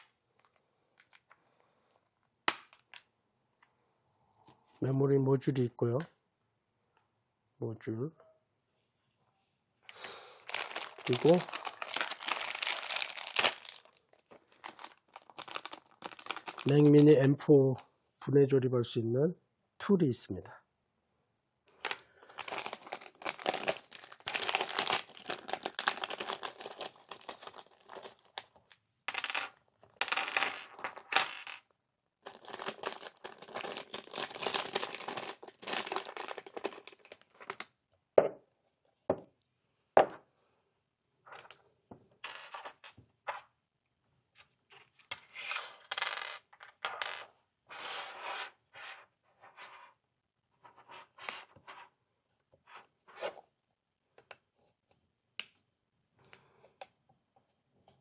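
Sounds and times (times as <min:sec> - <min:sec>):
small metal tools clinking: 0:22.4 - 0:28.4.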